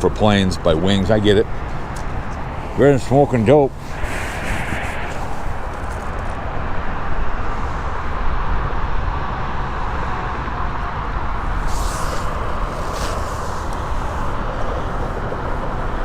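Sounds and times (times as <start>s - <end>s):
freeway traffic passing: 0.0s - 16.0s
brief high hiss: 3.8s - 6.2s, 11.6s - 13.8s.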